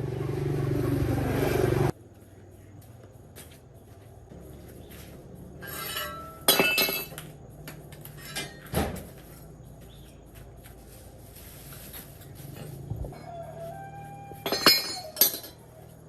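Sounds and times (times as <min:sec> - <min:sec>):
hard objects clinking and knocking: 0:05.6 - 0:07.4, 0:14.4 - 0:15.7.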